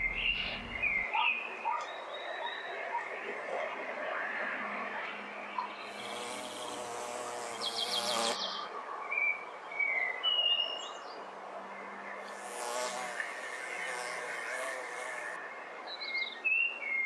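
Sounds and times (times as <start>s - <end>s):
high bird trill: 0.0s - 1.1s
low wavering bird calls: 0.0s - 1.1s.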